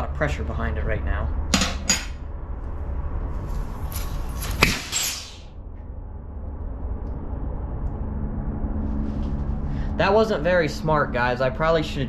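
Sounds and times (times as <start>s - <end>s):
low steady hum: 0.0s - 12.0s
compressed air hissing: 4.0s - 5.5s
sharp pop: 4.4s - 5.4s.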